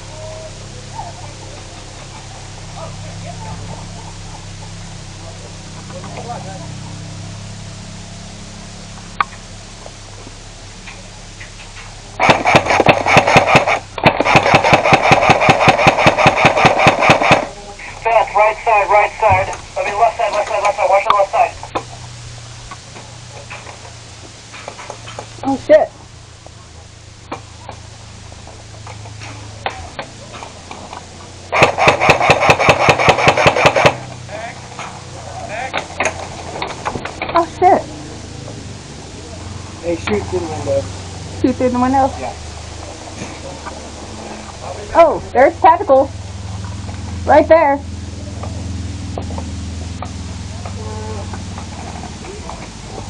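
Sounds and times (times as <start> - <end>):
airsoft gun firing full auto: 12.2 - 17.5, 31.5 - 34.1.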